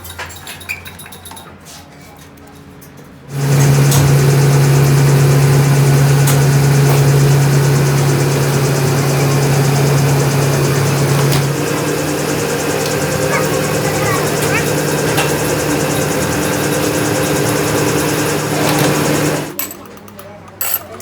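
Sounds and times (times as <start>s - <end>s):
machine humming: 3.3s - 19.6s.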